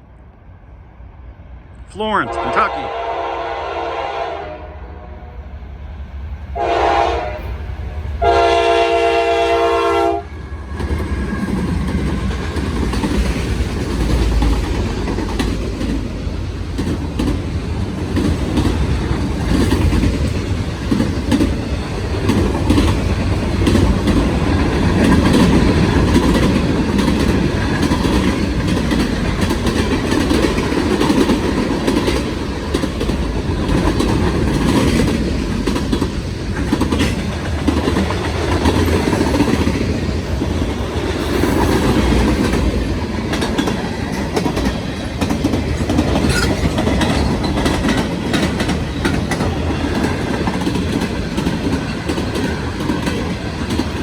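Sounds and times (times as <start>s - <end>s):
train air horn blasts: 2.2s - 5.4s, 6.6s - 7.5s, 8.2s - 10.3s.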